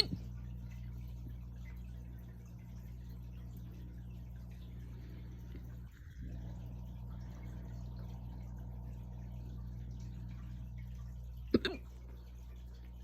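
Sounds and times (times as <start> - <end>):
low steady hum: 0.0 - 13.0
person hiccuping: 11.5 - 11.9.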